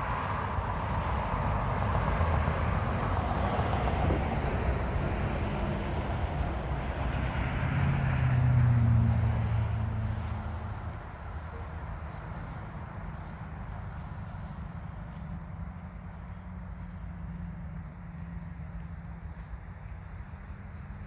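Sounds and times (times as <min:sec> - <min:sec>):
vehicle engine rumbling: 0:00.0 - 0:21.0.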